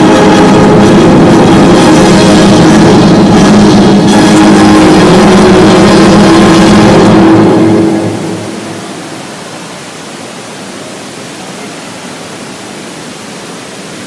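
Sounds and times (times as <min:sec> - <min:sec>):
show music with sustained notes: 0:00.0 - 0:09.3
waterfall rushing: 0:00.0 - 0:14.0.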